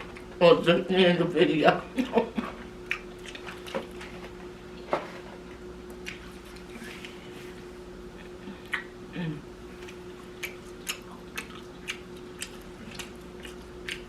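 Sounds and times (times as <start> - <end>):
low room hum: 0.0 - 14.0
person chewing food: 2.1 - 4.4, 5.9 - 9.0, 9.6 - 14.0.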